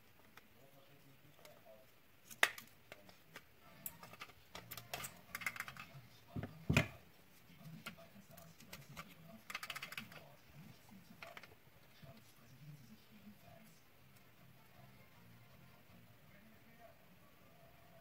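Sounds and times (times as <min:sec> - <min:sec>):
plastic parts clicking: 0:03.8 - 0:05.9.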